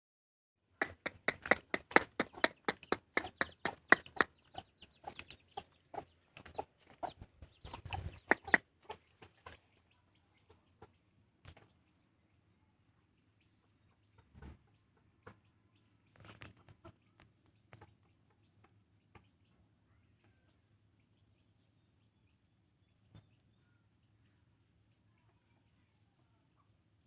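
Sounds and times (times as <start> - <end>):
rail bird calling sharp notes: 0.8 - 4.3, 8.2 - 8.6.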